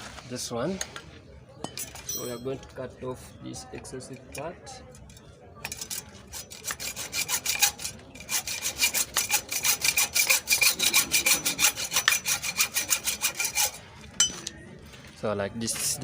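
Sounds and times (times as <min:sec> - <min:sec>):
hacksaw sawing through steel: 0:05.6 - 0:13.9.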